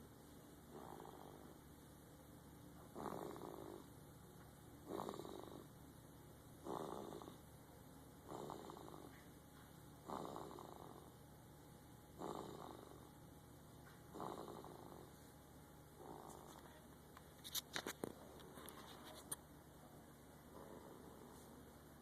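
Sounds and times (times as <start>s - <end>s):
person snoring: 0.7s - 1.6s, 3.0s - 3.9s, 4.8s - 5.7s, 6.6s - 7.4s, 8.3s - 9.2s, 10.0s - 11.1s, 12.2s - 13.1s, 14.1s - 15.1s.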